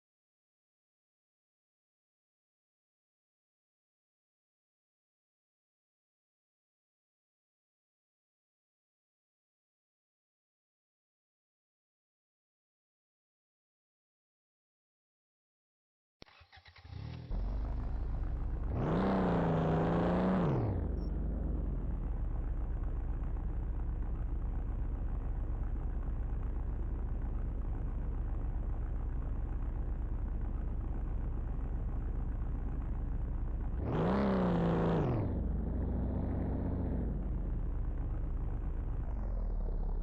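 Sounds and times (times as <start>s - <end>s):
car engine starting: 16.3s - 40.0s
car engine revving: 16.8s - 23.1s, 33.4s - 40.0s
car engine idling: 16.9s - 18.8s, 20.9s - 34.2s, 35.4s - 40.0s.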